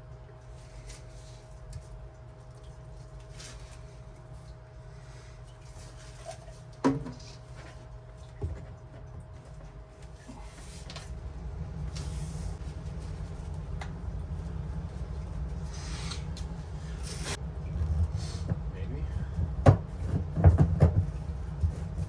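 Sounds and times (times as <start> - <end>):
low rumble: 10.4 - 22.0.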